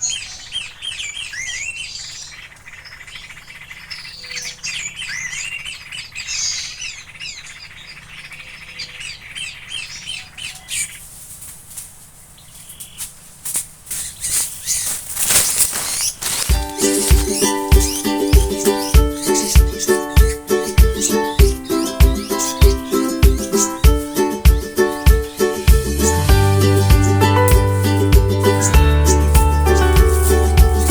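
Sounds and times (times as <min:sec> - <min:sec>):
songbirds chirping: 0:00.0 - 0:30.9
wing flaps and rustles: 0:10.4 - 0:30.9
music: 0:16.5 - 0:30.9.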